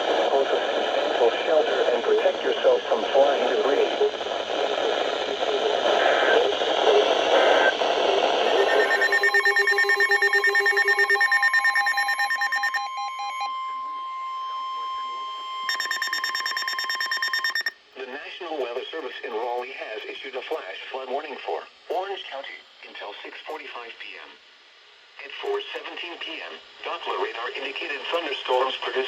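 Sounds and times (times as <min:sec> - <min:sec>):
hissy radio audio: 0:00.0 - 0:11.8, 0:13.4 - 0:16.4, 0:17.9 - 0:24.4, 0:25.2 - 0:29.0
harsh digital data buzz: 0:05.4 - 0:17.8
steady alarm tone: 0:08.4 - 0:17.8.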